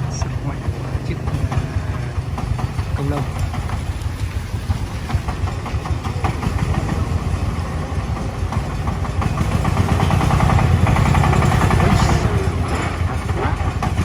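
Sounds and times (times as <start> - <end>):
diesel engine running under load: 0.0 - 14.0.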